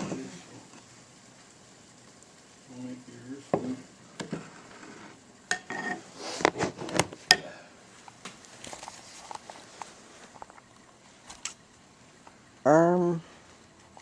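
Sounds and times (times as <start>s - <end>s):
dishes and utensils clattering: 5.5s - 6.1s.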